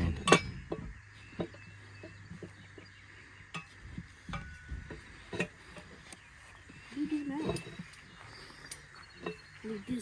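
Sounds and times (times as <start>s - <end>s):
hand tools clinking on metal: 6.9s - 10.0s.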